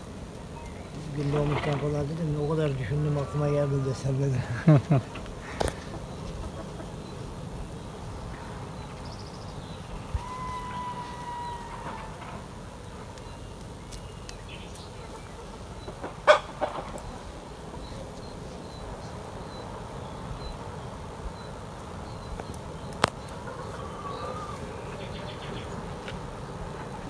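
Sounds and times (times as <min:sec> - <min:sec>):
chickens clucking: 0:00.2 - 0:09.0, 0:14.4 - 0:27.0.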